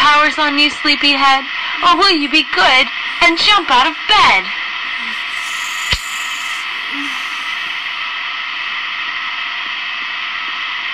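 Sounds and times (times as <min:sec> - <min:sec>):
alarm clock playback hiss: 0:00.5 - 0:09.6
sharp click: 0:05.4 - 0:06.6.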